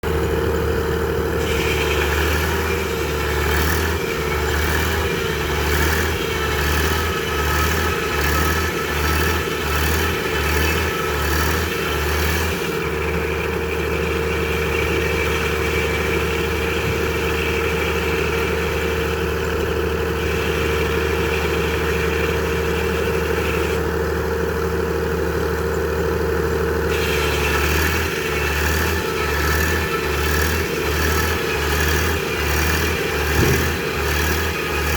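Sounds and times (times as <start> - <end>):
sawmill running: 0.0 - 34.9
low pulsing throb: 29.9 - 34.9.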